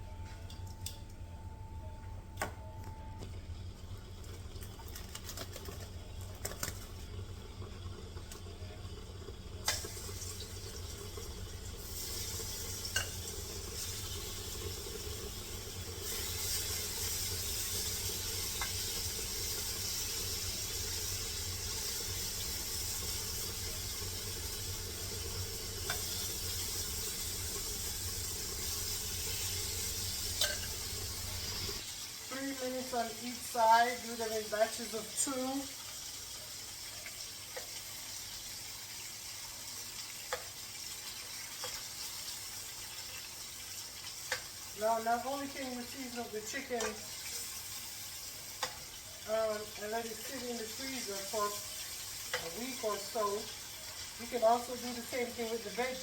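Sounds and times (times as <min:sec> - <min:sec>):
low hum: 0:00.0 - 0:09.6
chicken sizzling in hot oil: 0:03.8 - 0:56.0.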